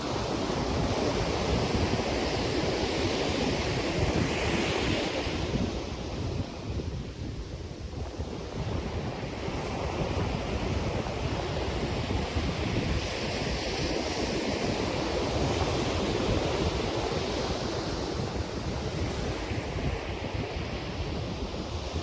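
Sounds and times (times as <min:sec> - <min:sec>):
surf breaking on a beach: 0:00.0 - 0:22.0
wind rumbling on microphone: 0:00.0 - 0:22.0.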